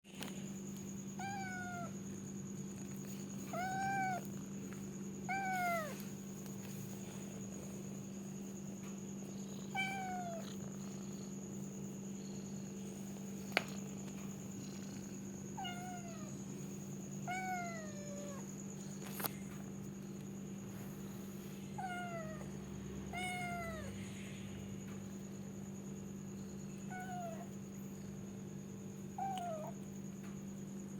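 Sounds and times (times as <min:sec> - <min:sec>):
cat meowing: 0:01.2 - 0:01.9, 0:03.5 - 0:04.3, 0:05.3 - 0:06.0, 0:09.7 - 0:10.4, 0:17.2 - 0:18.4, 0:23.1 - 0:23.9, 0:26.9 - 0:27.5, 0:29.2 - 0:29.8.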